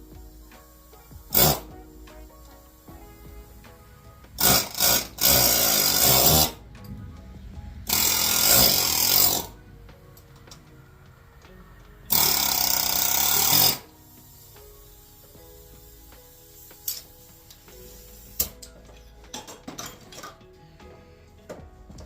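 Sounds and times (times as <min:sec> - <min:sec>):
faint background music: 0:00.0 - 0:22.0
pneumatic air hammer rattling: 0:00.6 - 0:03.1, 0:04.4 - 0:06.9, 0:07.9 - 0:09.6, 0:12.1 - 0:14.5, 0:16.6 - 0:20.4.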